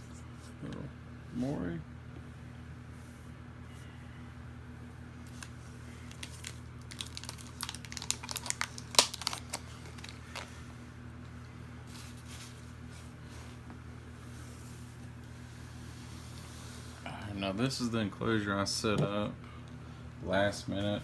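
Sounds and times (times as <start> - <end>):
steady low hum: 0.0 - 21.0
plastic packaging crinkling and clicking: 5.2 - 10.5.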